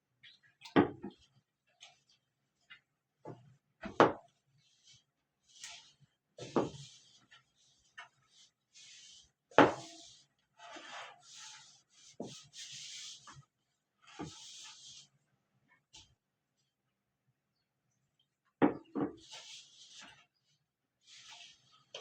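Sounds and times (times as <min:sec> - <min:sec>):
dry rubbing and scraping: 0:06.4 - 0:15.2.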